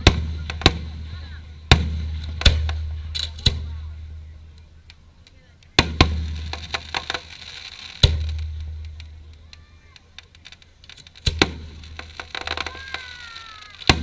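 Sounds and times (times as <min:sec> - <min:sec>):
firework shells booming: 0:00.0 - 0:14.0
fireworks crackling: 0:00.0 - 0:14.0
falling firework whistle: 0:12.3 - 0:14.0.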